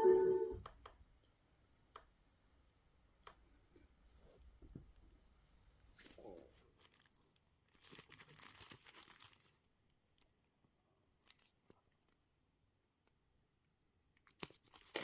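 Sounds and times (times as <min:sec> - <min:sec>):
packaging rustling and tearing: 0:06.7 - 0:09.6, 0:11.2 - 0:11.6, 0:14.2 - 0:15.0.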